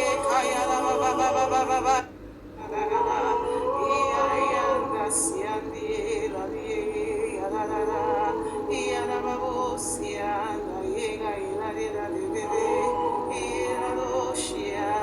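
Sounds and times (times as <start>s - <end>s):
voices singing long notes: 0.0s - 15.0s.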